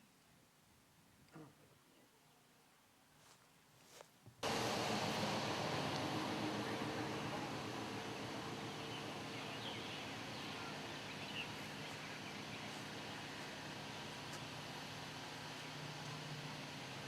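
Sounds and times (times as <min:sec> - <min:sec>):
outdoor background noise: 0:00.0 - 0:17.0
faint bird chirps: 0:08.7 - 0:12.9.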